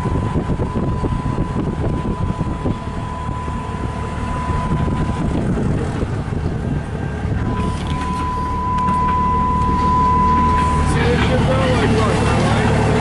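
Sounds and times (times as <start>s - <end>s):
thin high tone: 7.4s - 12.1s.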